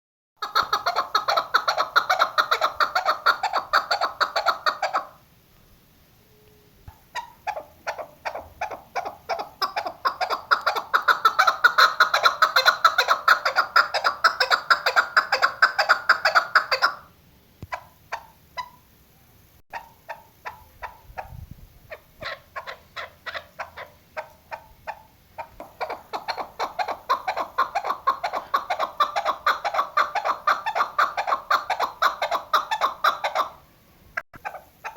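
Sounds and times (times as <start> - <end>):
partridge calling: 0.4 - 5.2, 6.9 - 18.9, 19.7 - 33.6, 34.4 - 34.9.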